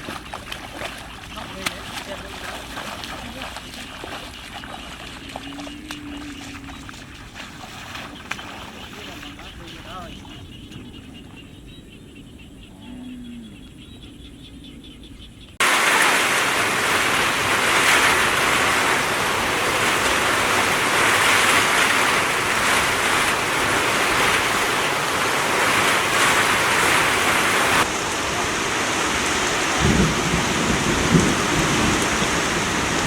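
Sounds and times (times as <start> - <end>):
heavy rain falling: 15.6 - 33.0.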